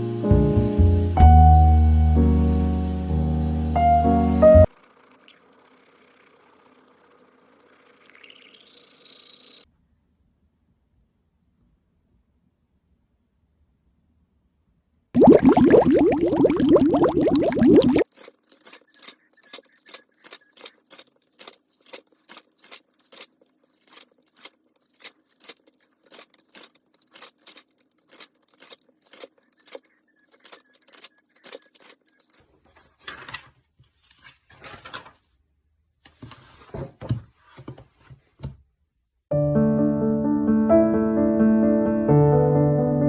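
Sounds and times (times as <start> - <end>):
rustling and handling noise: 18.1 - 35.4, 36.0 - 38.6.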